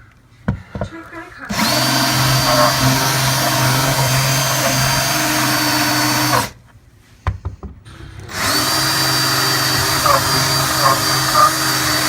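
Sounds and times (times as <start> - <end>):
power drill whining: 1.5 - 6.6, 8.2 - 12.0.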